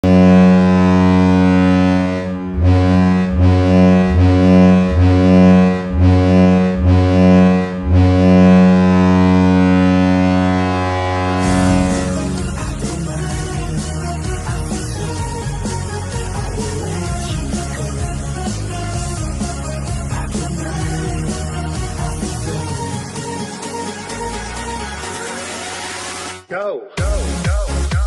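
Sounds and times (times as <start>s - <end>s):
goal horn blasts: 0.0s - 12.7s
goal song music: 0.0s - 28.0s.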